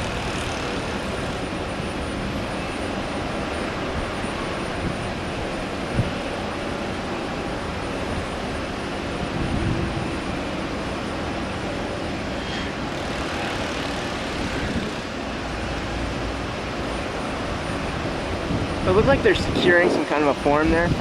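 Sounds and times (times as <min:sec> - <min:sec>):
jet engines rumbling: 0:00.0 - 0:21.0.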